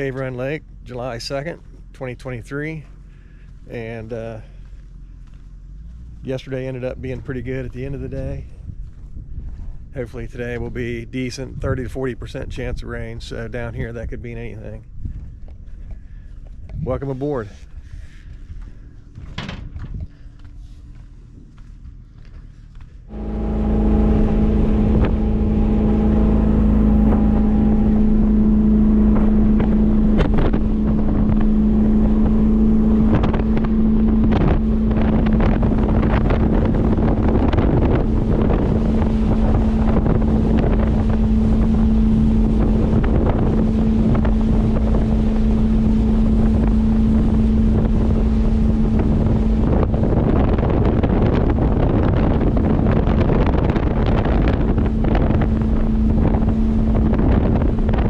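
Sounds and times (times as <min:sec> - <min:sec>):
motorboat engine running: 0:00.0 - 0:58.0
wind buffeting microphone: 0:00.0 - 0:58.0
water rushing: 0:23.1 - 0:58.0.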